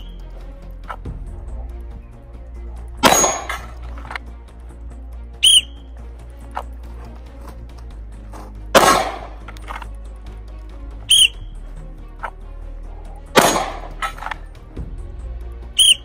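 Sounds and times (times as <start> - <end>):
short high whistle blast: 5.4 - 5.9, 11.1 - 11.5, 15.8 - 16.0
handgun shots: 8.8 - 9.4, 13.4 - 14.1.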